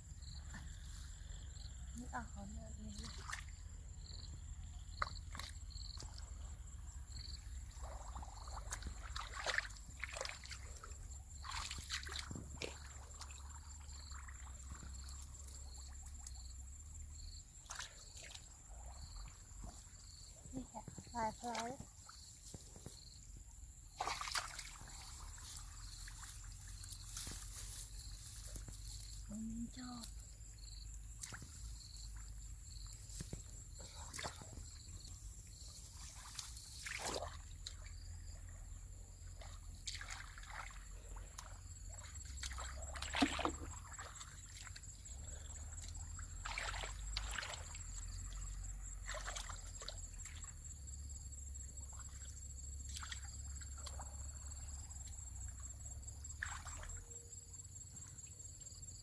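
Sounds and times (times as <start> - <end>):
water sloshing and trickling: 0.2 - 59.0
short splashes and knocks: 2.9 - 3.6, 4.9 - 6.3, 7.6 - 16.5, 17.6 - 30.2, 31.1 - 38.4, 39.3 - 50.6, 51.8 - 54.4, 56.2 - 57.0.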